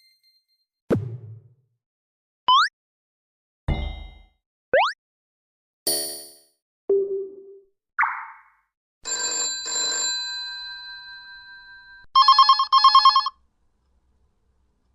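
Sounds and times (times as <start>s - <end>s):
fast trilling phone ring: 9.1s - 11.4s, 12.1s - 13.4s.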